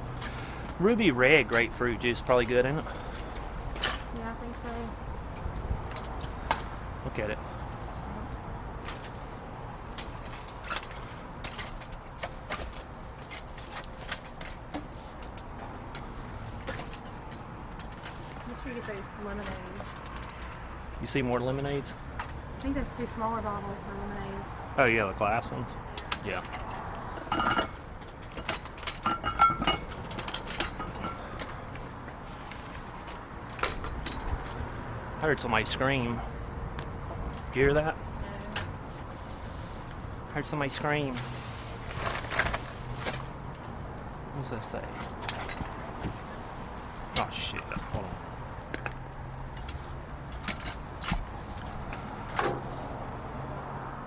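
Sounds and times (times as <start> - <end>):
bottles and trash clinking: 27.2 - 31.6.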